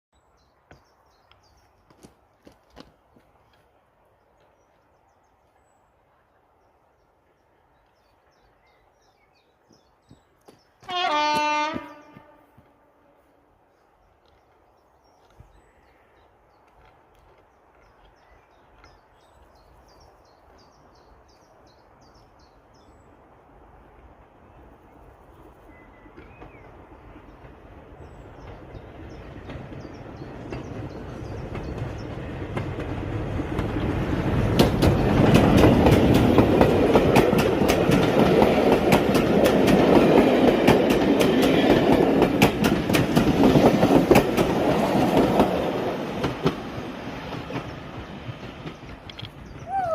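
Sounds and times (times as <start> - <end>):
train rumbling past: 0.3 - 49.9
train wheels clicking over rail joints: 26.1 - 49.6.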